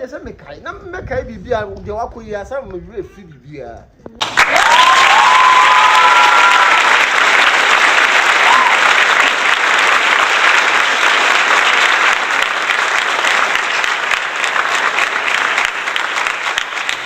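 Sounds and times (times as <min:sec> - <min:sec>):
applause: 0:04.2 - 0:17.0.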